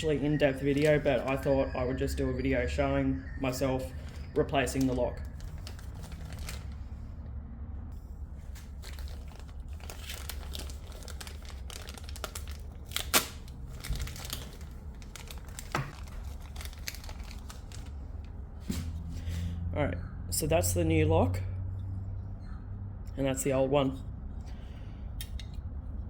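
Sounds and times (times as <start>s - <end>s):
packaging crinkling and tearing: 0.4s - 1.5s, 3.9s - 6.8s, 8.5s - 18.3s.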